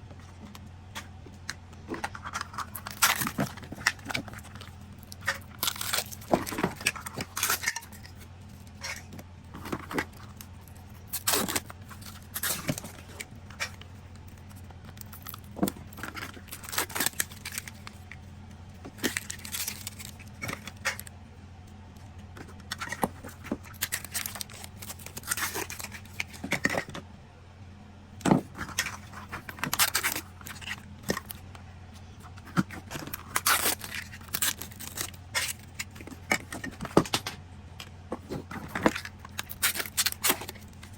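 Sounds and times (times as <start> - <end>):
plastic wrappers crinkling: 0.3 - 21.2, 22.1 - 27.0, 28.3 - 37.3, 38.0 - 40.9.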